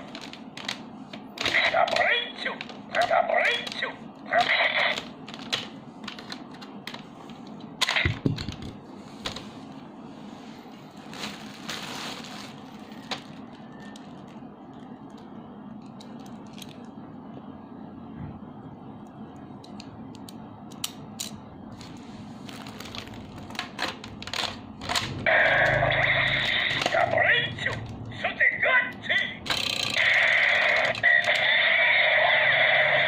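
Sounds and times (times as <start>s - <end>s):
plastic toy clicks: 29.4s - 31.5s.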